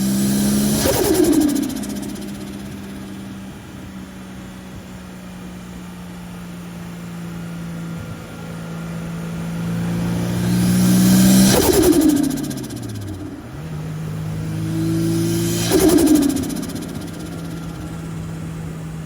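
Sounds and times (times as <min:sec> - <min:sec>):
turbo hiss: 0:00.0 - 0:03.8, 0:10.6 - 0:19.0
engine pulling under load: 0:00.0 - 0:04.6, 0:09.7 - 0:19.0
turbo compressor flutter: 0:00.0 - 0:05.8, 0:09.8 - 0:19.0.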